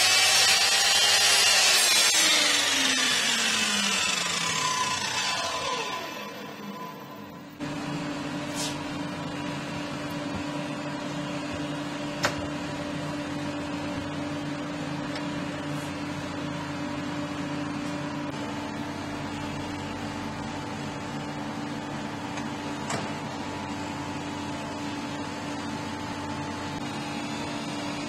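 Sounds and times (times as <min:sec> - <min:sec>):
electric motor hum: 0:00.0 - 0:22.3.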